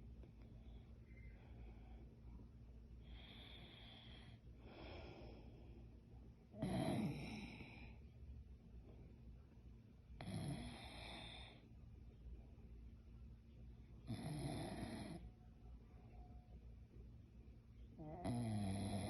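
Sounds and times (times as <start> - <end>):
woman snoring: 6.6 - 8.0, 10.2 - 11.6, 14.1 - 15.2, 18.0 - 19.0.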